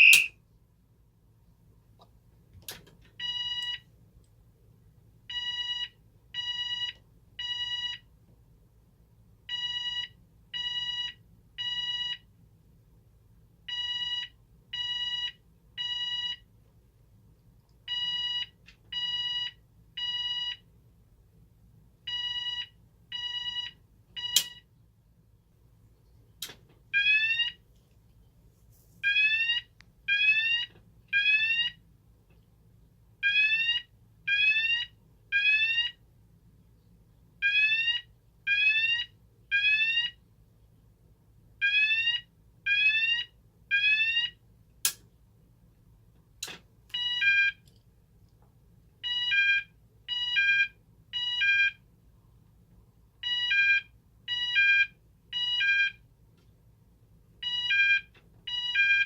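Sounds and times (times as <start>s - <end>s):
fire alarm beep tone: 0.0s - 0.3s
fire alarm whoop sweeps: 0.0s - 0.3s.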